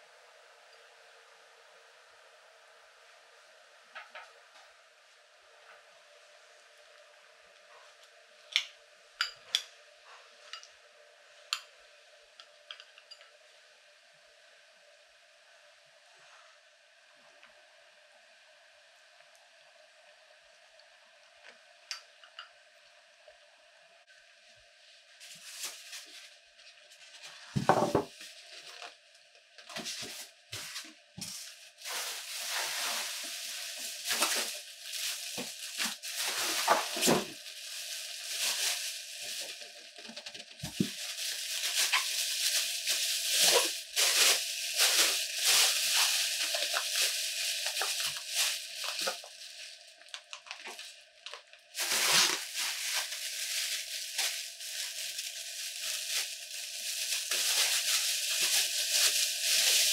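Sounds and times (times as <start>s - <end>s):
rustling handling noise: 25.2s - 28.9s, 29.6s - 59.9s.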